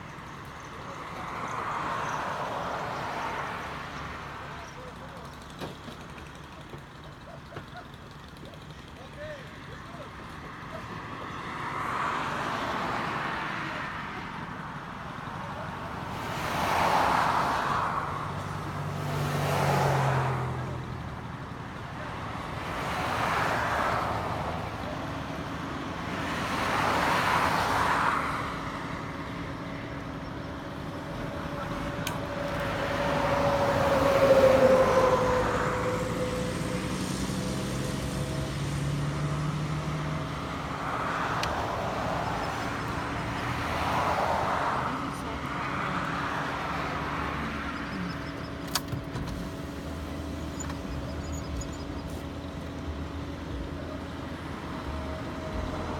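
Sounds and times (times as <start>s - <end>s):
cars passing: 0.0s - 55.9s.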